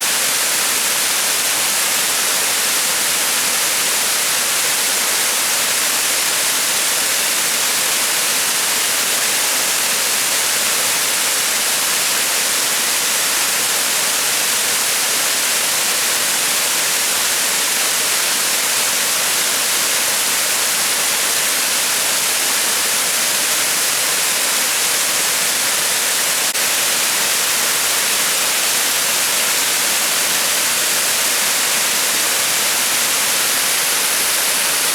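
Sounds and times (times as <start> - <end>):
waterfall rushing: 17.6 - 34.9.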